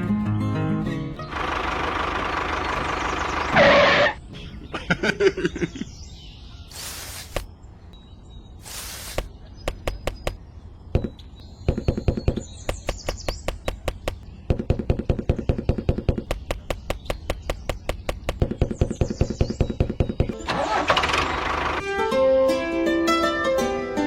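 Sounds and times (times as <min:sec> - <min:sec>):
short bursts of hiss: 0:06.7 - 0:07.5, 0:08.6 - 0:09.3.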